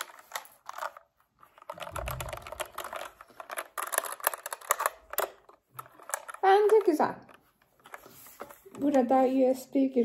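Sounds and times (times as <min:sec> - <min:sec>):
mechanical keyboard typing: 0:01.7 - 0:07.3.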